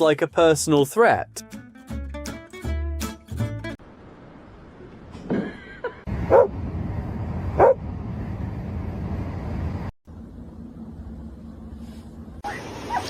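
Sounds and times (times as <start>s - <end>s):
low background rumble: 3.9s - 12.5s
dog barking: 6.3s - 6.5s, 7.6s - 7.8s.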